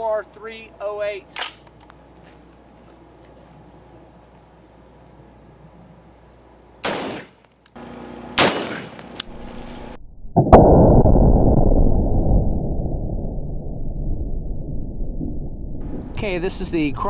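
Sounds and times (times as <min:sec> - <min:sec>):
rifle shots: 0:06.8 - 0:07.4, 0:08.4 - 0:09.5.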